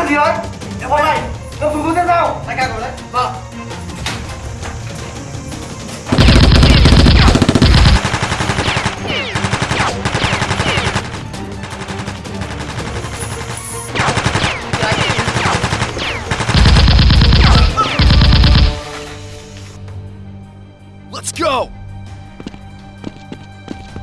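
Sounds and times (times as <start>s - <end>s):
automatic gunfire bursts: 6.1s - 18.9s.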